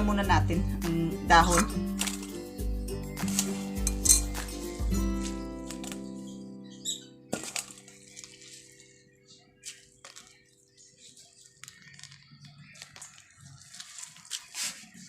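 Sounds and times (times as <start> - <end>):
wet squishing of leaves: 7.4 - 9.0, 9.6 - 15.0.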